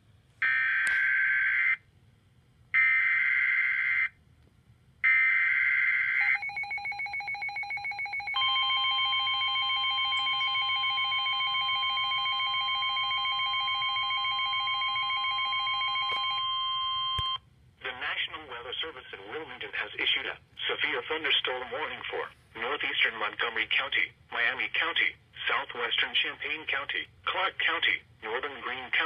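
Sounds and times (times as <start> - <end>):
steady attention tone: 6.2 - 18.7.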